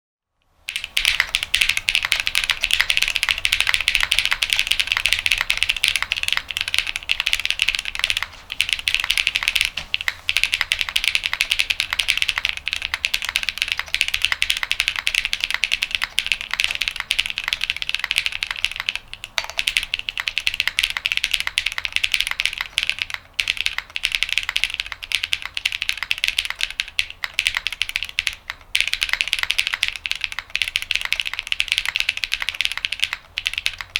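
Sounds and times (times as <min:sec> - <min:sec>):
fast mechanical keyboard typing: 0:00.6 - 0:33.9.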